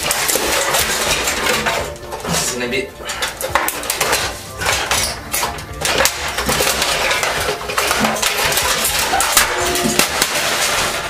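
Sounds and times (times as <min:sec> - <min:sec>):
metal clinking and scraping: 0:00.0 - 0:11.0.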